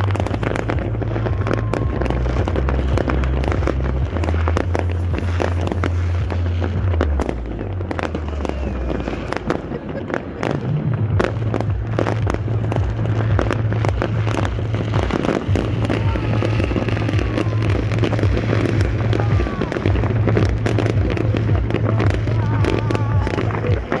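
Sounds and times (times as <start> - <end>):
fireworks bangs and crackles: 0.0 - 24.0.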